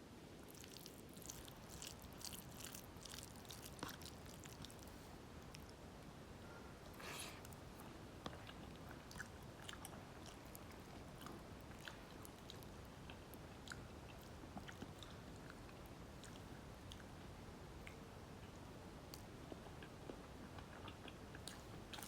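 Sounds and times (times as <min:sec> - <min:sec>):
person chewing: 0:00.5 - 0:05.7.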